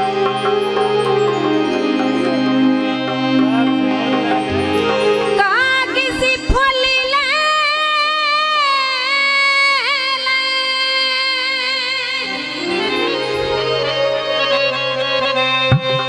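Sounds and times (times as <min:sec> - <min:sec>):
steady drone: 0:00.0 - 0:06.1
folk song music: 0:00.0 - 0:06.8, 0:12.2 - 0:16.0
long high melodic note: 0:00.0 - 0:07.2, 0:12.2 - 0:16.0.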